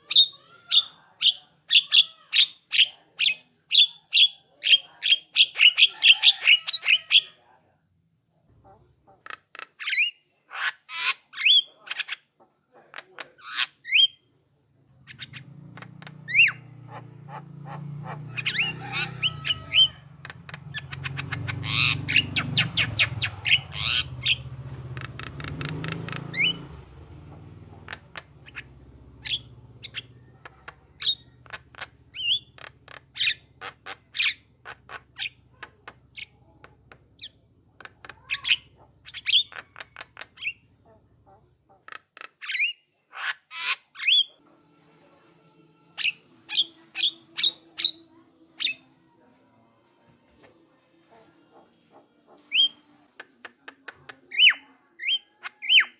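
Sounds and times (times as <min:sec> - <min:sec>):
birds chirping and whistling: 0:15.0 - 0:41.6, 0:42.4 - 0:42.9, 0:43.6 - 0:44.4, 0:46.0 - 0:48.9, 0:52.3 - 0:53.0, 0:54.3 - 0:55.9.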